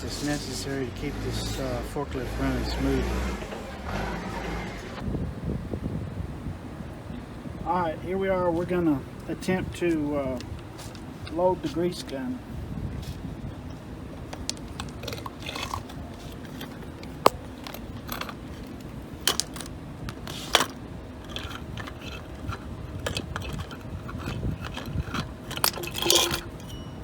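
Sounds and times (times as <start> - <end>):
metal clicks knocks and scrapes: 14.4 - 26.8.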